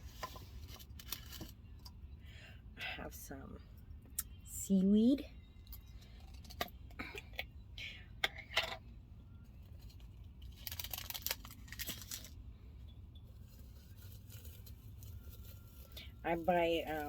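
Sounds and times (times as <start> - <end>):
package rustling and crinkling: 0.0 - 1.7, 9.6 - 12.4, 13.2 - 17.0.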